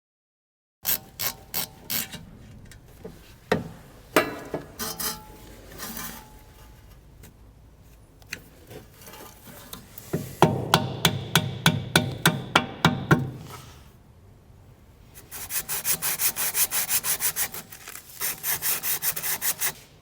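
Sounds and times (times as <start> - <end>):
metallic knocks: 3.5 - 5.3.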